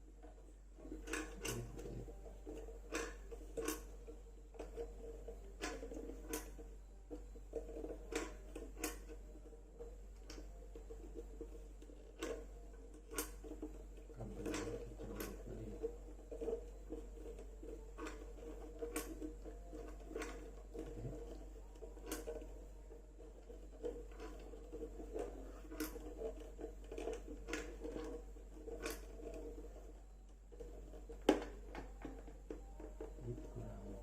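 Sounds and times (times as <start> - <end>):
cable and plastic parts clicking: 0.9 - 5.0.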